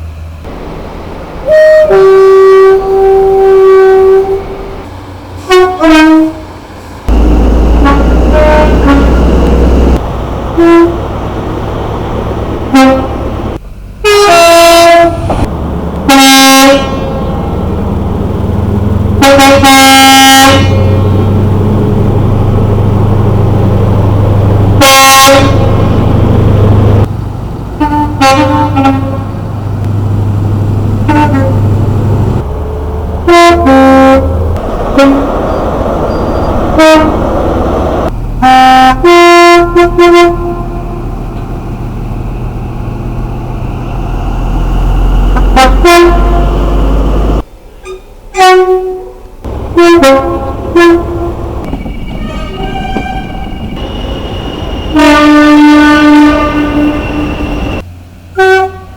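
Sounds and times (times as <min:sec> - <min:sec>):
diesel engine hum: 0:00.0 - 0:58.9
two-tone train horn blasts: 0:01.4 - 0:04.8, 0:05.4 - 0:06.5, 0:07.1 - 0:10.0, 0:10.6 - 0:11.0, 0:12.7 - 0:13.3, 0:14.0 - 0:17.4, 0:19.1 - 0:21.4, 0:24.7 - 0:26.1, 0:27.8 - 0:29.4, 0:31.1 - 0:31.8, 0:33.2 - 0:41.1, 0:45.2 - 0:46.9, 0:47.8 - 0:58.9.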